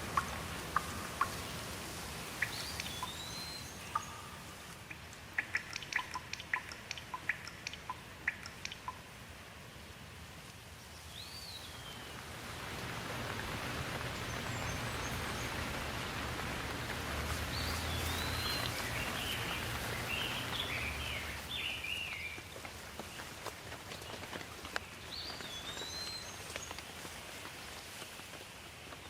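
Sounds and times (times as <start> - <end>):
steady rainfall hissing: 0.0 - 29.0
bird chirping: 0.1 - 9.1, 11.0 - 12.2, 13.7 - 16.2, 17.4 - 23.3, 24.0 - 27.0.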